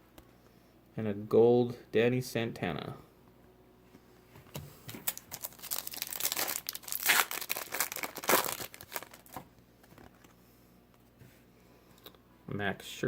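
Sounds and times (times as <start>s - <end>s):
foil wrapper tearing and crinkling: 5.0s - 9.4s.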